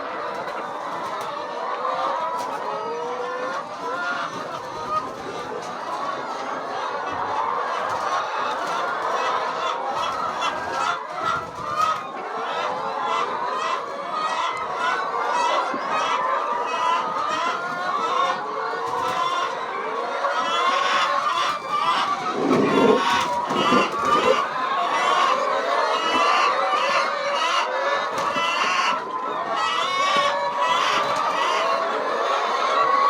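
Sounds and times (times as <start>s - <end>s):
flock of chickens clucking: 0.0s - 33.0s
louder lower-pitched chicken calls: 0.0s - 33.0s.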